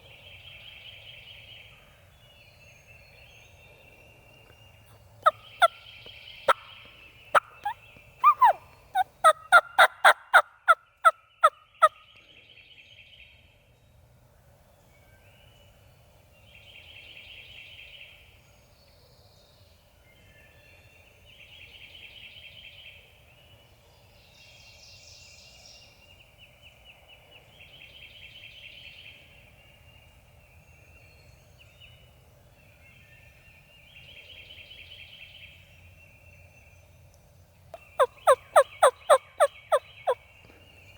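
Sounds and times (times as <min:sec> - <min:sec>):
turkey gobbling: 0:05.2 - 0:05.8, 0:06.5 - 0:10.8, 0:37.8 - 0:40.2
turkey yelping: 0:07.3 - 0:10.8, 0:37.8 - 0:40.2.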